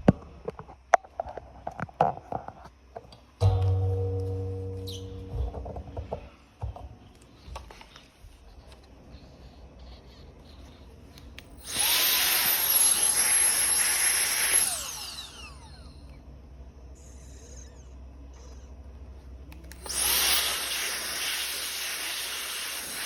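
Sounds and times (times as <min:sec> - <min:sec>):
turbo fan motor whine: 0:11.4 - 0:16.2.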